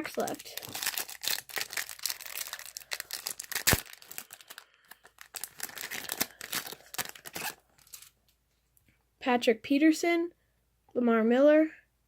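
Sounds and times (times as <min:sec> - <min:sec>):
foil wrapper tearing and crinkling: 0:00.0 - 0:08.1.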